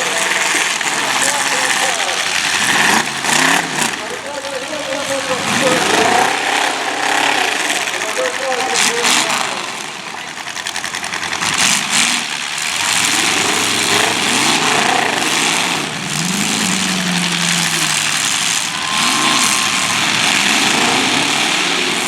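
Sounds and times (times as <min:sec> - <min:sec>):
car engines revving: 0:00.0 - 0:22.0
loud steady wash of noise: 0:12.8 - 0:22.0.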